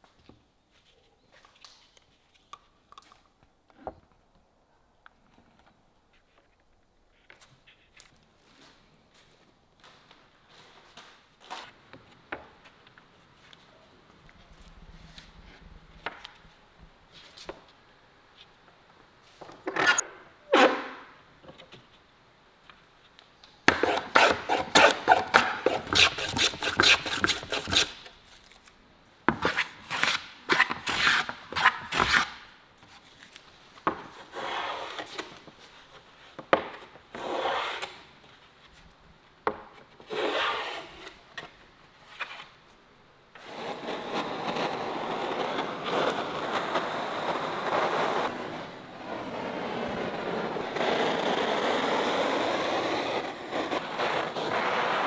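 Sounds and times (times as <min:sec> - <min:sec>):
hand rasp scraping wood: 0:23.7 - 0:28.1.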